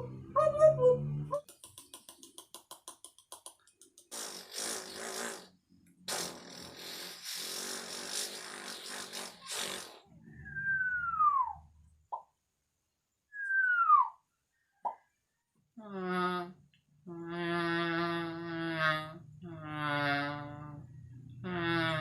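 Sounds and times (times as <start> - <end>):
mouth clicks: 1.4 - 11.4
raspy mouth blowing with buzz: 4.0 - 10.1.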